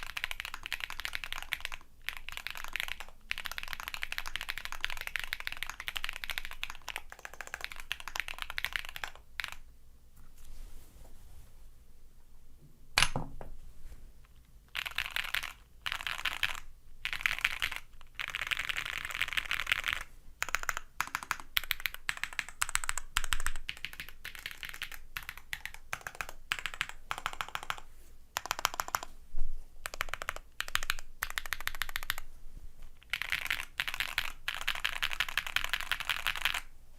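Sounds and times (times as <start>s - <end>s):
mechanical keyboard typing: 0.0s - 9.6s, 14.7s - 27.8s, 28.4s - 29.1s, 29.8s - 32.2s, 33.0s - 36.7s.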